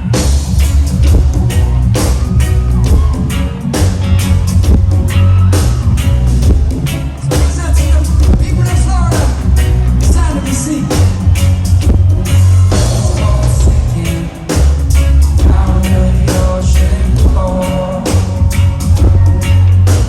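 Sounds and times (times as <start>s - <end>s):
booming bass line: 0.0s - 20.0s
live reggae band playing: 0.0s - 20.0s
person singing: 12.6s - 20.0s.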